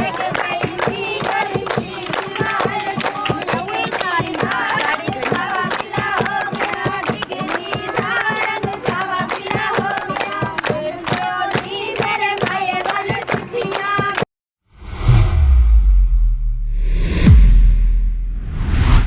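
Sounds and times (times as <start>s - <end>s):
people singing folk song: 0.0s - 14.2s
dense percussion beat: 14.8s - 19.0s.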